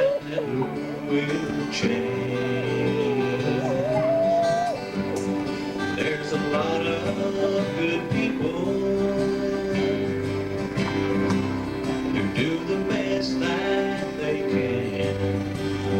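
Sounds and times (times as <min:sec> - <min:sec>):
acoustic guitar chords: 0:00.0 - 0:15.9
country gospel band playing: 0:00.0 - 0:15.9.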